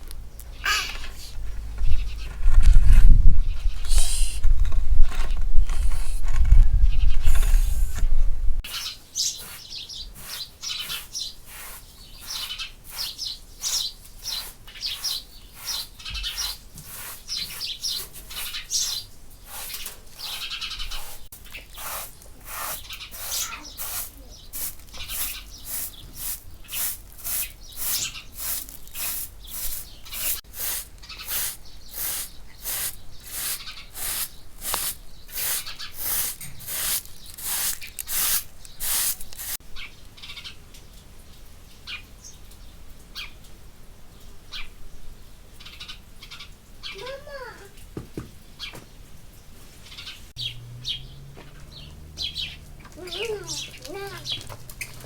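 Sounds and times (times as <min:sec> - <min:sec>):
birds chirping: 0:00.0 - 0:43.5, 0:44.1 - 0:55.0
stiff brush scrubbing carpet: 0:08.7 - 0:18.9, 0:21.8 - 0:39.6.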